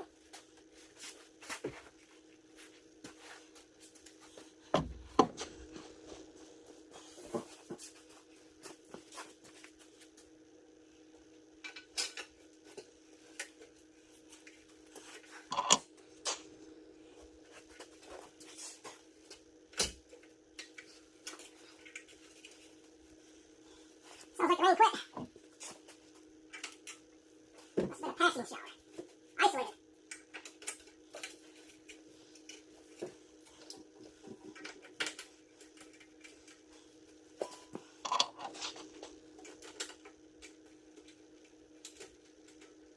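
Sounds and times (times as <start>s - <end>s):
steady low hum: 0.0s - 42.9s
metal tools clinking and knocking: 38.0s - 38.8s.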